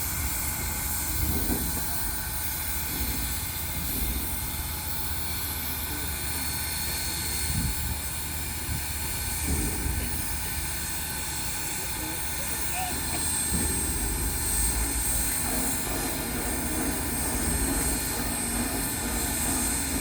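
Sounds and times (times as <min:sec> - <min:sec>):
locomotive low rumble: 0:00.0 - 0:20.0
steam hissing: 0:00.0 - 0:20.0.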